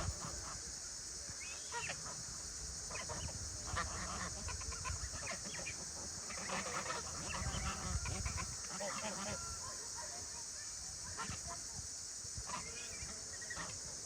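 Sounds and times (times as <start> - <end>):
poultry calling: 2.9 - 9.8.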